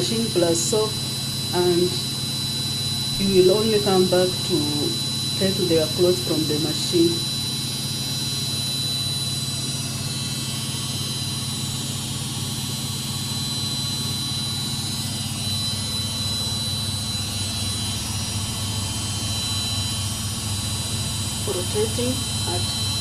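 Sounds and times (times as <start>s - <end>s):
faint high whine: 0.0s - 23.0s.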